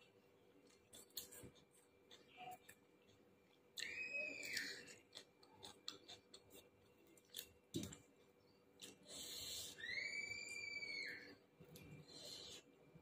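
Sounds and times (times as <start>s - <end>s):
close-up chewing: 0.0s - 9.8s
high whistle-like calls: 3.8s - 4.9s, 9.7s - 11.4s.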